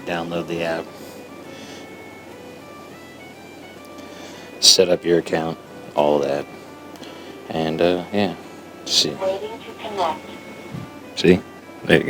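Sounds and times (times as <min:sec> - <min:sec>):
quiet background music: 0:00.0 - 0:12.0.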